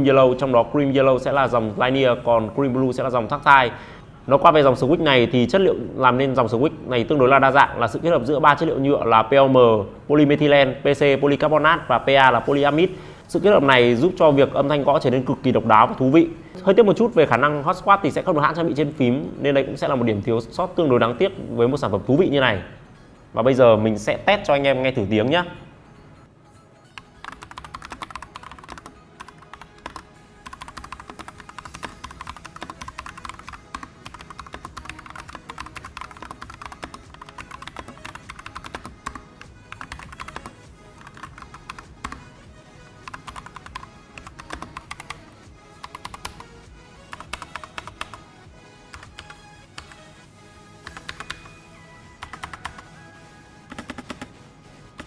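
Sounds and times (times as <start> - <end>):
mechanical keyboard typing: 27.0 - 42.2, 43.0 - 45.2, 45.8 - 46.5, 47.1 - 48.2, 48.9 - 50.0, 50.8 - 51.6, 52.2 - 52.9, 53.7 - 54.3.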